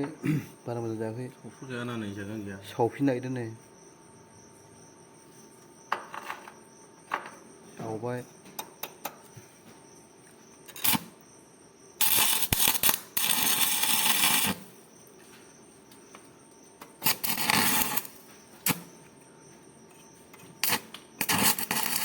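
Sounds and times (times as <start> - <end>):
welding arc crackling and sizzling: 10.7 - 11.1, 12.0 - 14.7, 17.0 - 18.9, 20.6 - 22.0.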